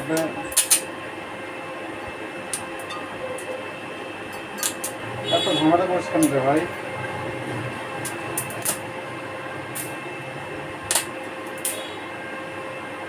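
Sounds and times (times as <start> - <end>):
sharp welding crackles: 0.0 - 0.9, 4.5 - 5.5, 7.4 - 8.9, 9.6 - 10.0, 10.8 - 12.0
welding machine electrical hum: 0.0 - 13.0.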